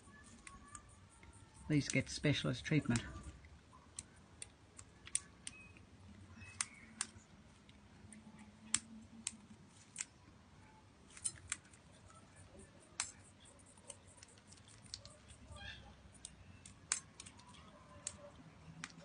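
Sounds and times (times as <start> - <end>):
beaks cracking seed: 12.8 - 19.0.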